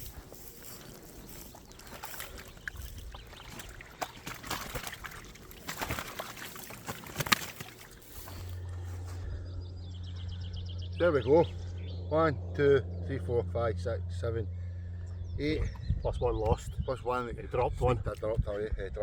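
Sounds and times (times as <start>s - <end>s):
sharp ticks and rustles: 0.0s - 8.6s
water sloshing and splashing: 0.0s - 8.7s
steady low hum: 0.0s - 19.0s.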